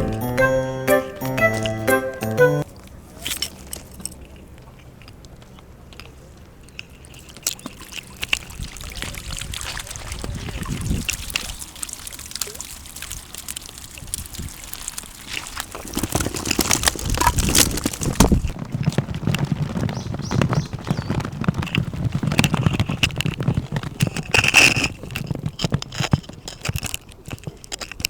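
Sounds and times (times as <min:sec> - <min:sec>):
water sloshing and trickling: 0:06.8 - 0:18.5.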